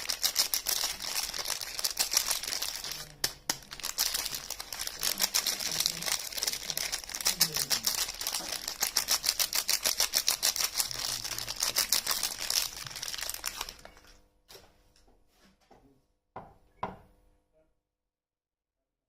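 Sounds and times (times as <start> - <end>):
wrapper crinkling and tearing: 0.0 - 14.1.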